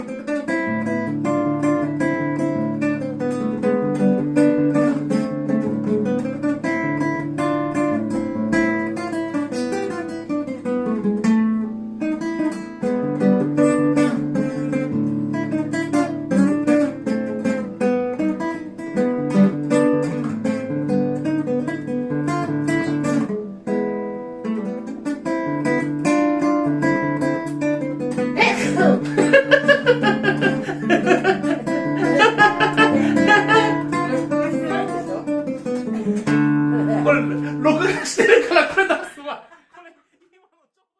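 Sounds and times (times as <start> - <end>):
acoustic guitar plucked notes: 0.0 - 38.2.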